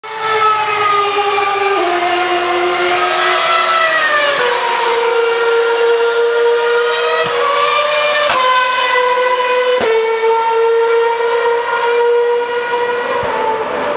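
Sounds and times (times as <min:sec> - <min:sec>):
racing car engine at high revs: 0:00.0 - 0:13.9.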